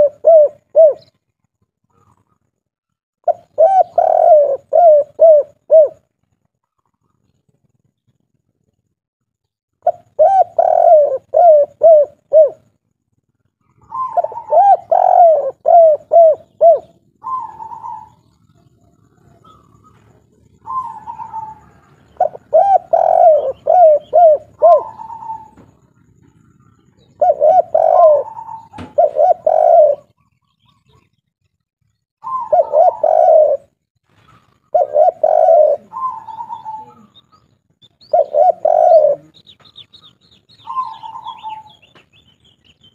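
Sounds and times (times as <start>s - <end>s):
dove cooing: 0.0s - 1.2s, 3.2s - 6.1s, 9.8s - 12.7s, 13.6s - 31.1s, 32.2s - 42.9s.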